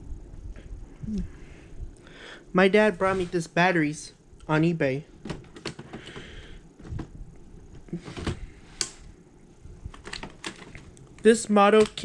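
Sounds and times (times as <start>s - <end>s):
soft rustle: 2.9s - 3.6s.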